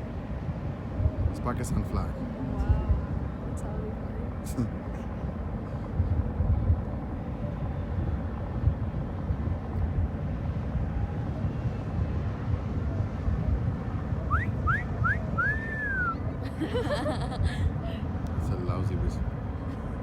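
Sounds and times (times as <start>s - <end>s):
low background rumble: 0.0s - 20.0s
person whistling: 14.3s - 16.2s.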